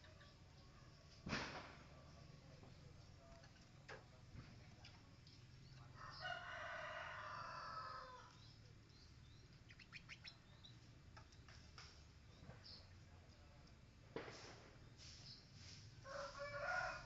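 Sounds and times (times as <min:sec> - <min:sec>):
rooster crowing: 0:06.0 - 0:08.3, 0:16.0 - 0:17.0.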